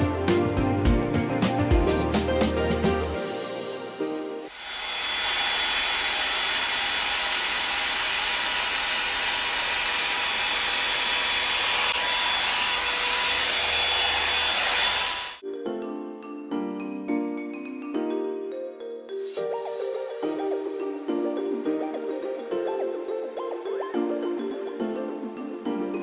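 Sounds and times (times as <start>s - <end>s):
hair dryer air rush: 4.4s - 15.4s.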